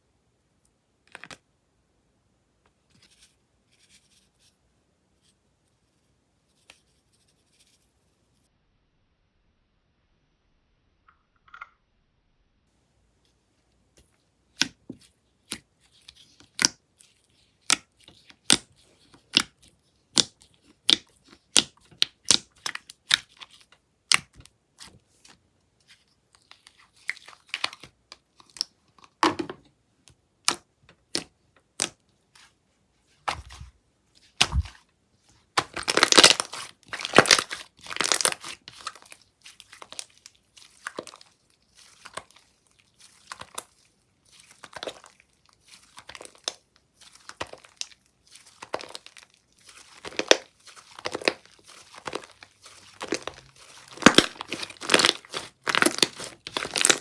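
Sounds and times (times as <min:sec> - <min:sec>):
slime crackling and crinkling: 0:15.5 - 0:29.2, 0:33.2 - 0:57.0
slime popping: 0:34.4 - 0:34.8, 0:35.6 - 0:41.2, 0:46.0 - 0:57.0.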